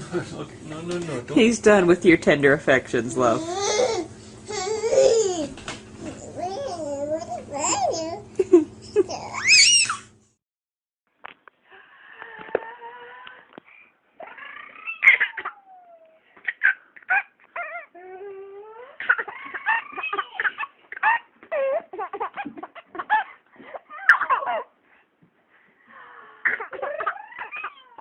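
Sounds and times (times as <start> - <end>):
baby fussing and squealing: 3.4 - 5.5, 6.1 - 8.2, 9.1 - 10.1, 14.2 - 24.7, 26.4 - 28.0.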